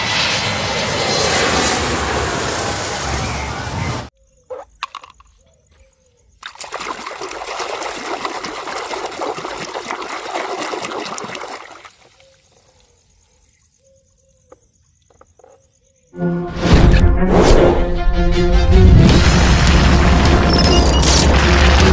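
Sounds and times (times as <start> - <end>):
water running: 6.4 - 12.1.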